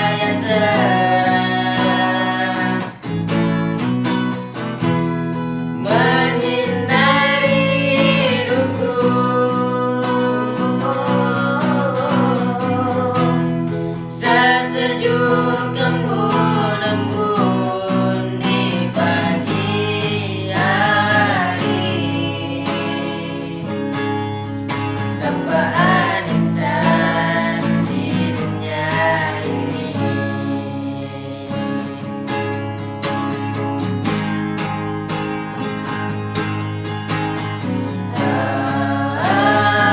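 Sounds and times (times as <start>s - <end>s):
person singing: 0.0s - 3.0s, 5.8s - 23.9s, 25.0s - 32.5s, 38.1s - 39.9s
acoustic guitar: 0.0s - 39.9s.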